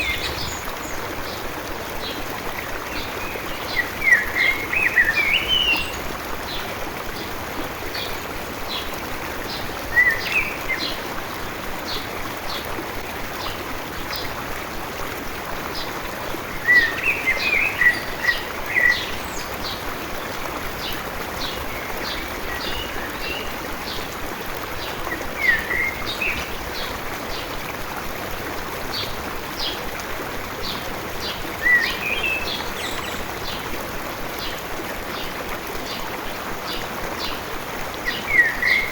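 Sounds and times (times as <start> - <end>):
songbird chirping: 0.0 - 1.0
stream rushing: 0.0 - 38.9.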